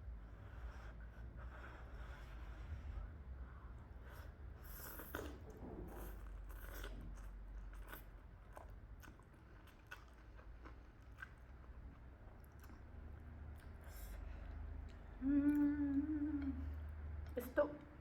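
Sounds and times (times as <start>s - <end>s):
person chewing food: 4.7s - 17.4s.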